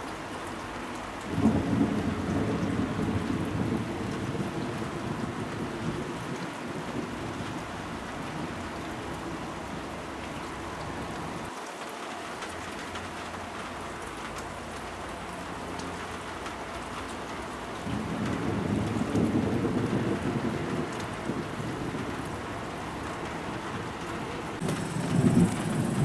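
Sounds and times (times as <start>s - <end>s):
heavy rain falling: 0.0s - 26.0s
deep thunder rumbling: 1.3s - 8.7s, 17.8s - 26.0s.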